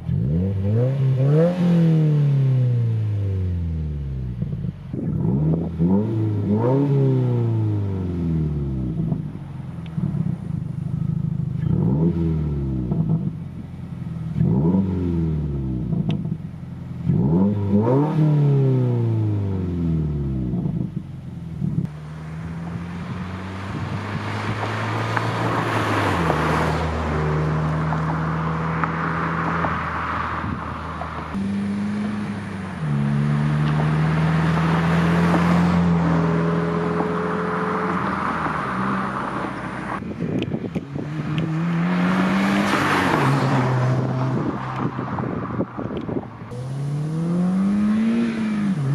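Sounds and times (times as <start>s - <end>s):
car engine revving: 0.0s - 48.9s.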